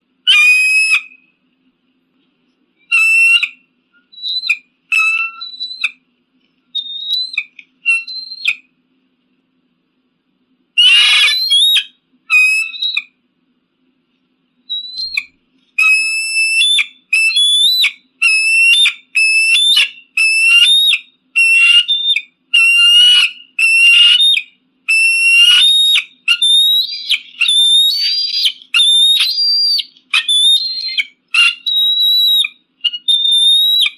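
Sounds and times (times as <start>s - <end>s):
eagle whistled cries: 0.2s - 1.4s, 2.8s - 6.0s, 6.7s - 8.7s, 10.8s - 13.2s, 14.7s - 33.9s
eagle rough squawk: 0.3s - 1.2s, 2.9s - 6.0s, 10.8s - 13.1s, 14.8s - 33.9s.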